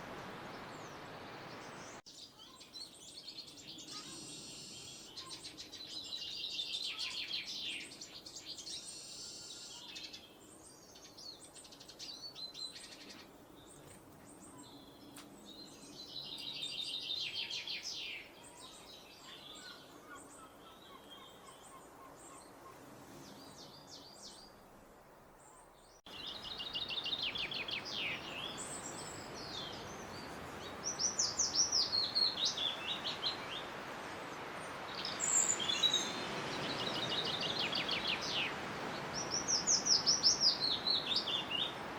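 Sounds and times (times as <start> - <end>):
background hiss: 0.0 - 41.9
bird chirps: 25.4 - 33.7.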